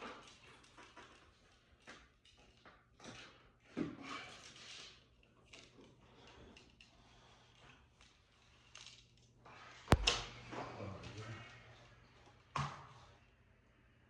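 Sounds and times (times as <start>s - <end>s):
sharp knock: 9.9s - 10.2s.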